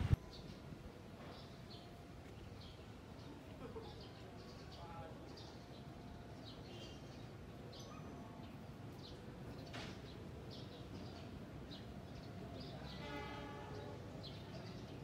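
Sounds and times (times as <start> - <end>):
small birds chirping: 1.2 - 13.0.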